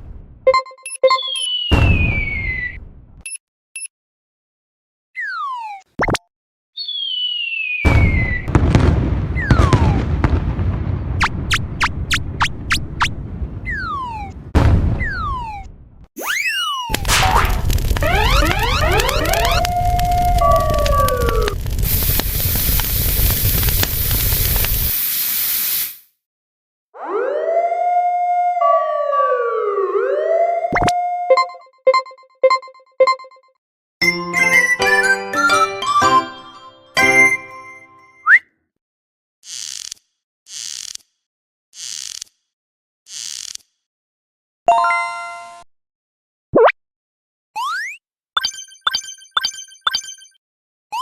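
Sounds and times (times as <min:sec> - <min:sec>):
rumbling explosion: 0:00.0 - 0:00.4, 0:01.8 - 0:03.2, 0:07.9 - 0:16.0, 0:16.9 - 0:24.9
descending cartoon whistle: 0:01.0 - 0:02.8, 0:06.8 - 0:08.5, 0:16.2 - 0:17.0, 0:18.0 - 0:21.5.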